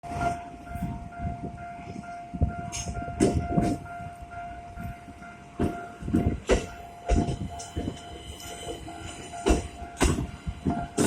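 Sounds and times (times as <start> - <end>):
level crossing alarm ringing: 0.1 - 11.0
train wheels clacking over rail joints: 5.5 - 11.0.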